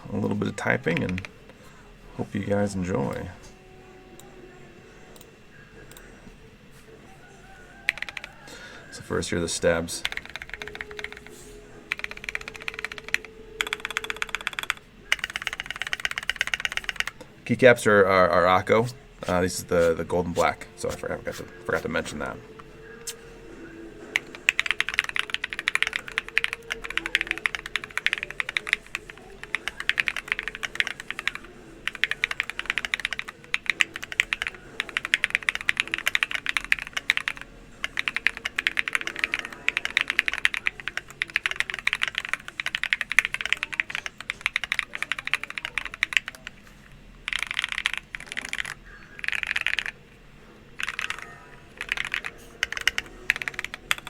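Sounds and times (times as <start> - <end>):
mechanical keyboard typing: 0.8 - 1.3, 7.8 - 8.5, 10.0 - 17.2, 24.1 - 50.0, 50.8 - 54.0.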